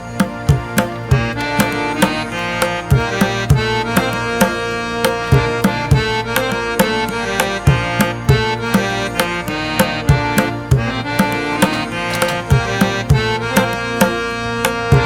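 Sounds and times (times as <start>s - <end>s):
melodic instrument sustained notes: 0.0s - 15.0s
hand drum beat: 0.2s - 15.0s.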